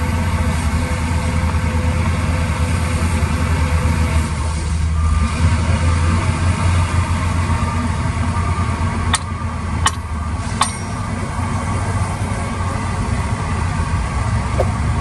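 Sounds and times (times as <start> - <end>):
diesel engine rumbling: 0.0 - 15.0
sharp metallic knocks: 10.6 - 11.2.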